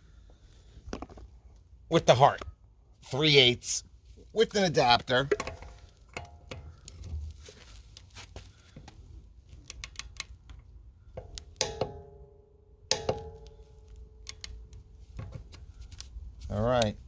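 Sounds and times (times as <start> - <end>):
sharp metallic clanks ringing: 11.6 - 13.8.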